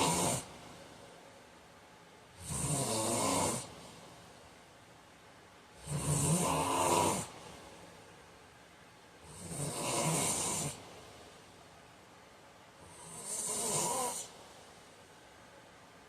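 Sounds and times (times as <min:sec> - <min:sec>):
man snoring: 0:00.0 - 0:00.5, 0:02.4 - 0:03.8, 0:05.8 - 0:07.4, 0:09.2 - 0:10.8, 0:12.8 - 0:14.4.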